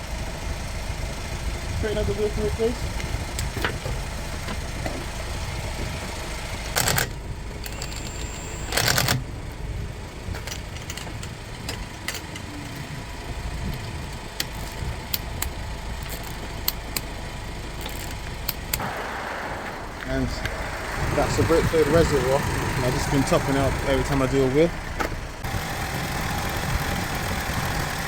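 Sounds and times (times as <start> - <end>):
car engine idling: 0.0 - 28.0
loud rattling: 17.6 - 28.0.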